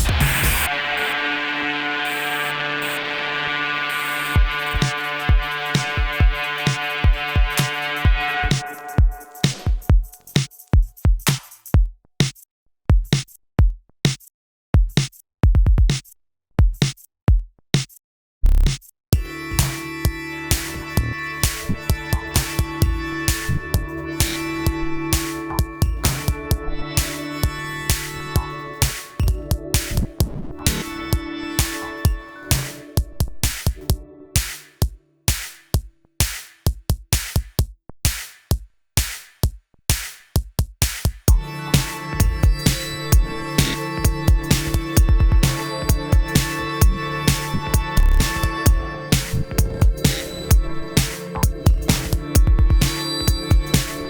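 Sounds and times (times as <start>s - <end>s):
drum machine beat: 0.0s - 0.7s, 4.3s - 54.0s
snare or clap hits: 11.3s - 11.6s, 28.8s - 29.1s, 32.5s - 32.8s, 34.4s - 41.2s, 51.0s - 51.2s.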